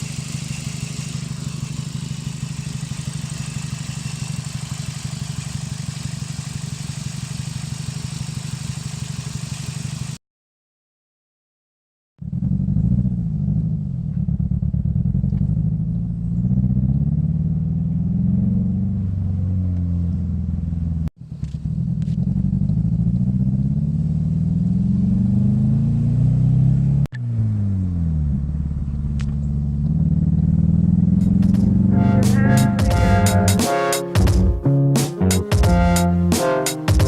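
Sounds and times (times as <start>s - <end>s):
car engine revving: 14.4s - 37.0s.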